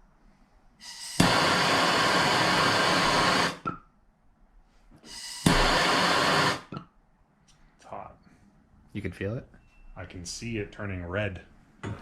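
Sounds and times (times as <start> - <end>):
soft gas hiss: 0.0 - 3.8, 4.5 - 12.0
gas torch flame roaring: 0.8 - 3.7, 5.0 - 6.8.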